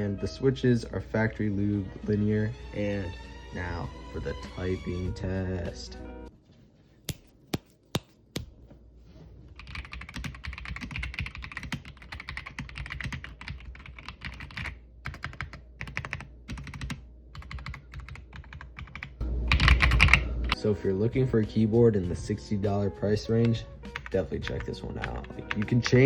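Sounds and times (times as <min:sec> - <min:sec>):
mechanical keyboard typing: 0:09.6 - 0:20.3.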